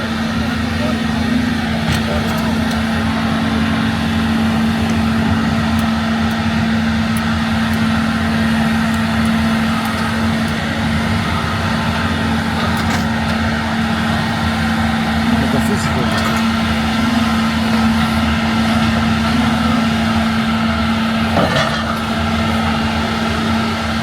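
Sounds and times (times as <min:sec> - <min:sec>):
excavator diesel engine running: 0:00.0 - 0:24.0.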